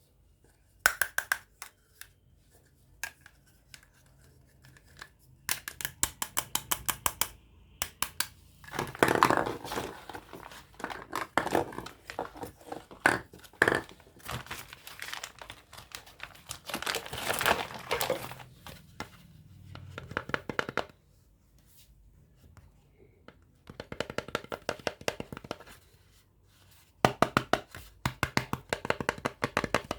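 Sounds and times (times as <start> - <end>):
plastic packaging crinkling and tearing: 13.8 - 18.7.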